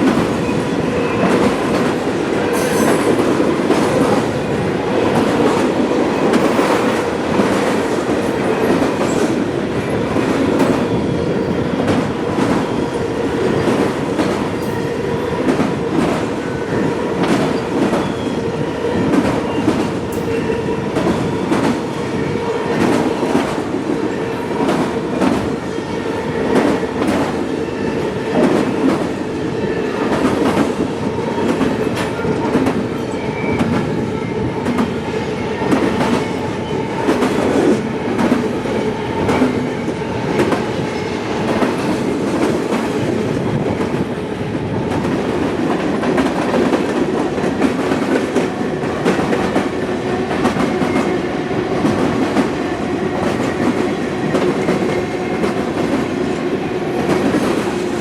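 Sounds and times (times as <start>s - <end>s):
faint ringing from train wheels: 0.0s - 4.6s, 6.1s - 43.1s.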